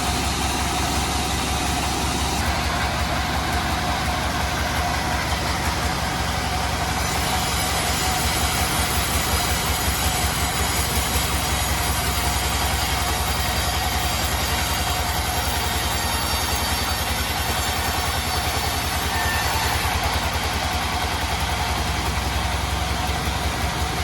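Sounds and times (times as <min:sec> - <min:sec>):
sawmill bandsaw running: 0:00.0 - 0:24.0.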